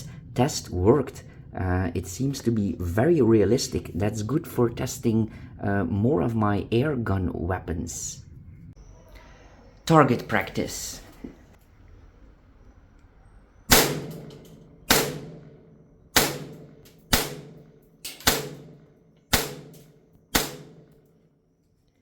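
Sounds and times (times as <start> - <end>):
airsoft pistol shots: 13.7 - 21.0.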